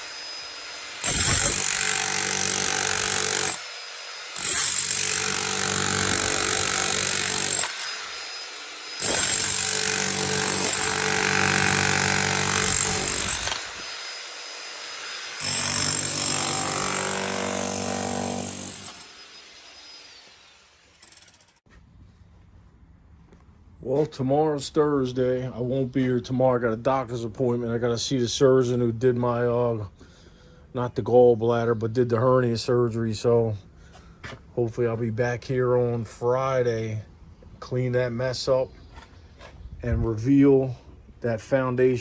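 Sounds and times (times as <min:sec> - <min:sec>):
demolition hammer breaking concrete: 0:01.0 - 0:03.6, 0:04.4 - 0:07.7, 0:09.0 - 0:13.6, 0:15.4 - 0:19.0.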